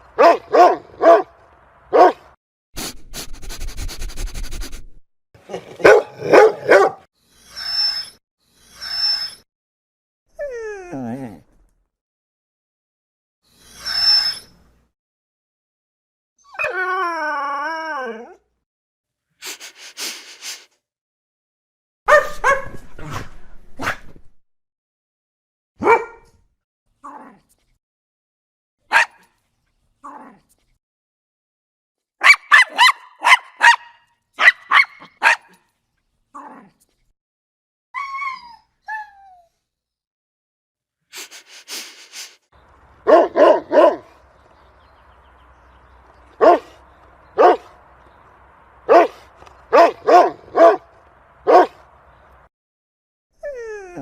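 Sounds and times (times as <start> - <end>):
dog barking: 0.2 - 1.3, 1.9 - 2.3, 5.5 - 7.1, 22.1 - 22.8, 25.8 - 26.3, 28.9 - 29.3, 32.2 - 35.6, 43.0 - 44.2, 46.4 - 47.8, 48.8 - 51.9
dog high falling calls: 43.0 - 47.8, 48.8 - 51.8.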